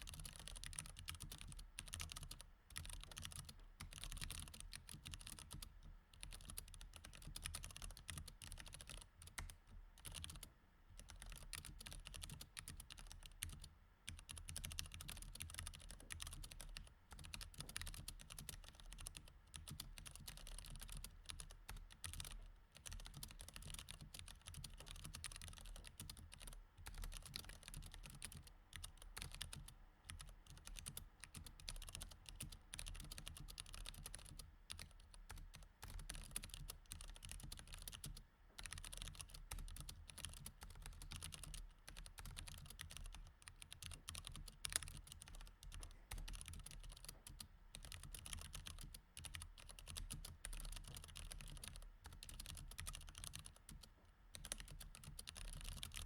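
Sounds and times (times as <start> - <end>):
typing on mechanical keyboard: 0.0 - 56.0.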